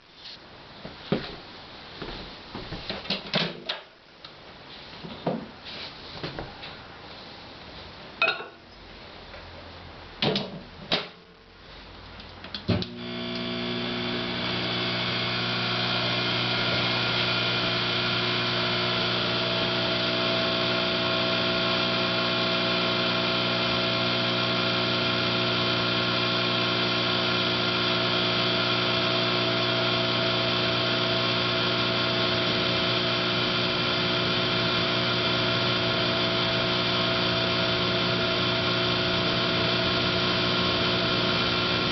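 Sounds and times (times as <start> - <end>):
microwave humming: 12.7 - 41.9.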